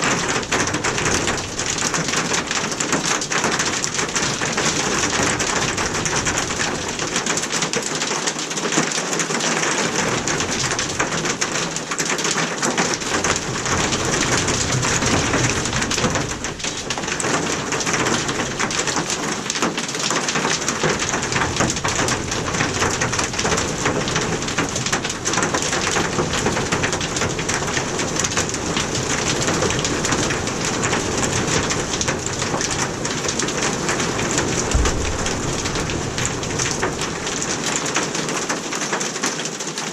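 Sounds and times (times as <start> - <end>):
hail and rain pelting: 0.0 - 39.9.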